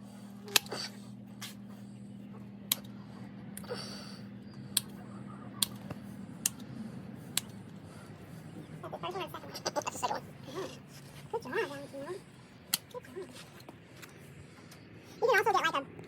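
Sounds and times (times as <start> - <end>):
low steady hum: 0.0 - 16.0
shears snipping hoof: 0.4 - 1.9.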